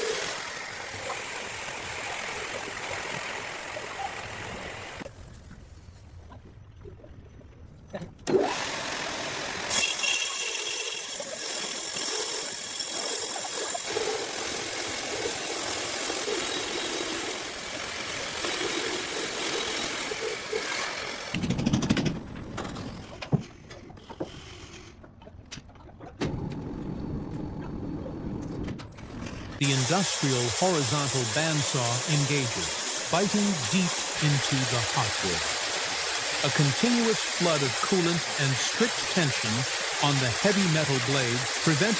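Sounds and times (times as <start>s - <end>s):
sawmill machinery hissing: 0.0s - 5.0s, 8.4s - 21.4s, 29.6s - 41.9s.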